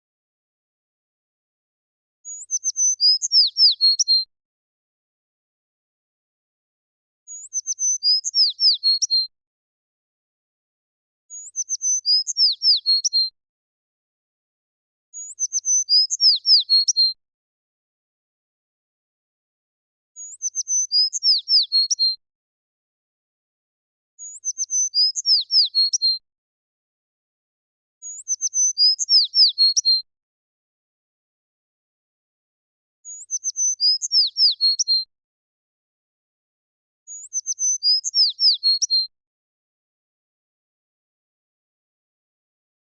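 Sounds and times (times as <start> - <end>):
sparrow singing: 2.2 - 4.3, 7.3 - 9.3, 11.3 - 13.3, 15.2 - 17.2, 20.2 - 22.2, 24.2 - 26.2, 28.0 - 30.0, 33.0 - 35.1, 37.1 - 39.1.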